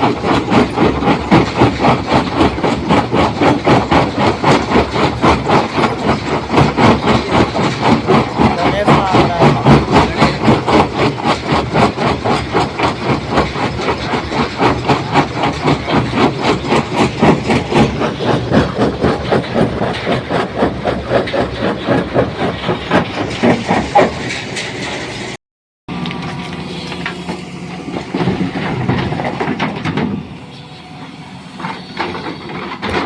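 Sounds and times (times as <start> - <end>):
stone crusher machinery clattering: 0.0 - 33.0.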